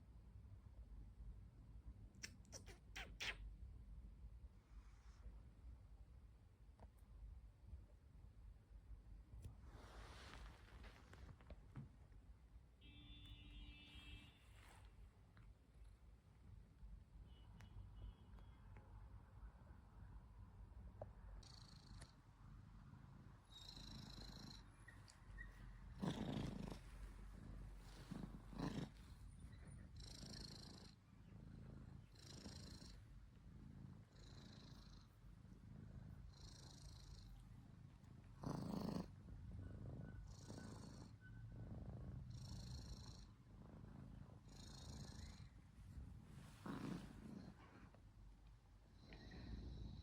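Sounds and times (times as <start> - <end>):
faint pulsing hiss: 0.0 - 50.0
cat purring loudly: 21.4 - 24.7, 25.8 - 48.0, 49.0 - 50.0.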